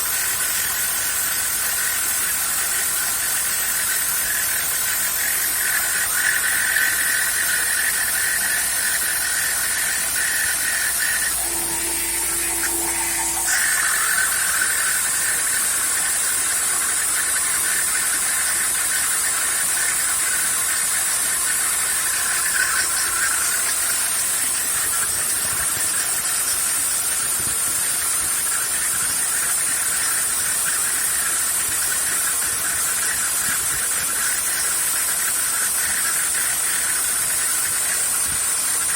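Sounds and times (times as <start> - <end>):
lower steady machine tone: 0.0 - 38.8
router spindle whining: 1.8 - 25.0
end mill cutting: 10.0 - 17.2.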